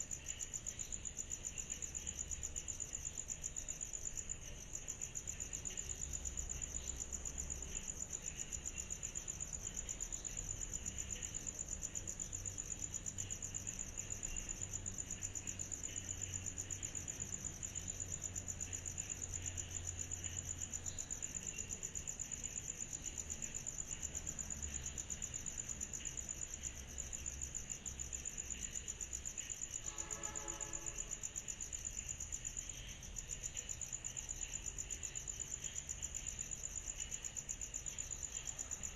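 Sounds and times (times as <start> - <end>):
insects trilling: 0.0 - 38.9.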